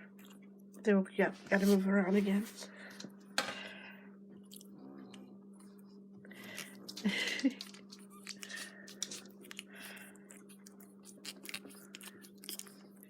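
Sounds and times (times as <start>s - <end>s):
puppies chewing and mouthing: 0.0s - 0.9s, 4.3s - 13.0s
steady low hum: 0.0s - 13.0s.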